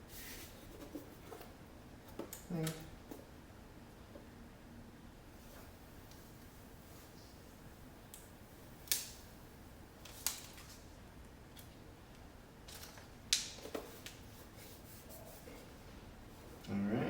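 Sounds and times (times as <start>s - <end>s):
faint room hiss: 0.0s - 17.0s.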